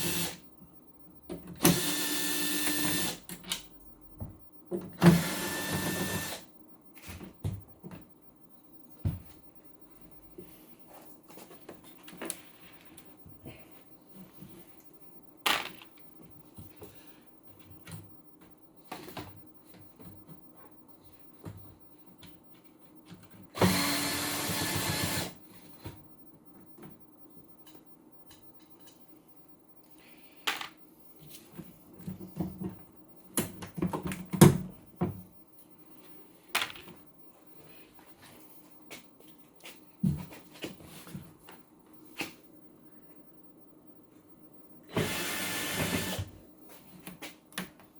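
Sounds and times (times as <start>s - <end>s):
small power tool running: 45.0s - 46.2s.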